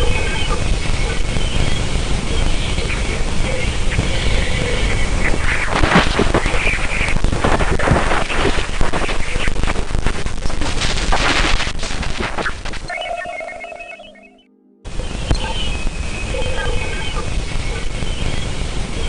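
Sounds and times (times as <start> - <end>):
crackling static with pops: 0.0 - 14.0, 14.9 - 19.0
steady tones: 12.9 - 17.5.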